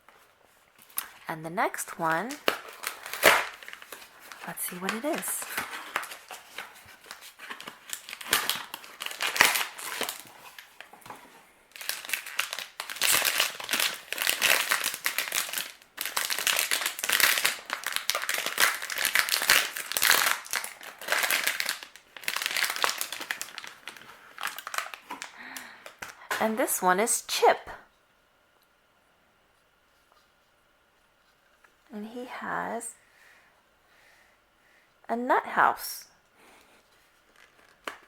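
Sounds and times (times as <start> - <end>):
packaging crinkling: 2.3 - 26.3, 37.2 - 38.0.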